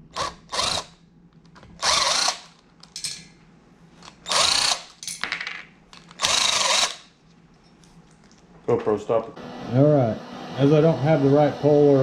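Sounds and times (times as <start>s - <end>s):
power tool bursts: 1.8s - 2.5s, 4.2s - 5.0s, 6.2s - 7.1s.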